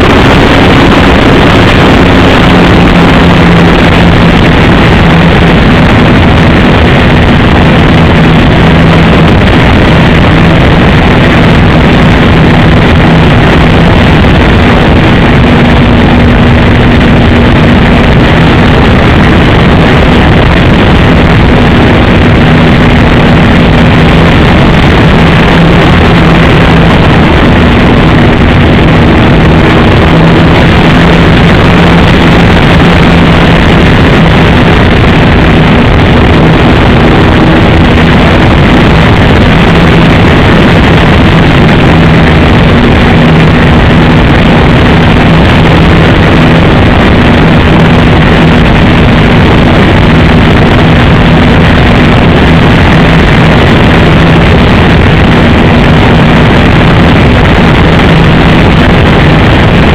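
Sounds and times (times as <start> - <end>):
model plane engine buzzing: 0.0 - 53.0
constant rushing noise: 0.0 - 59.9.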